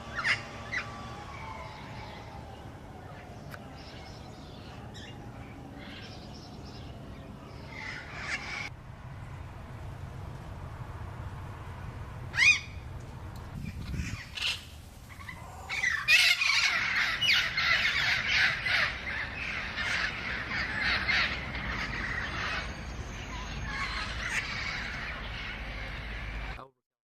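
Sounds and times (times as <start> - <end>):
parrots calling in chorus: 0.0 - 1.8, 7.7 - 8.7, 12.3 - 12.8, 13.8 - 26.6
loud parrot squawk: 0.1 - 0.9, 12.3 - 12.8, 13.8 - 26.6.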